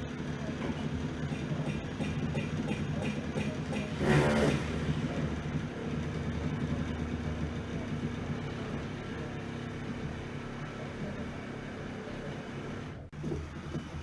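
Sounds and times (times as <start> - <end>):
short loud burst of noise: 3.8 - 5.0.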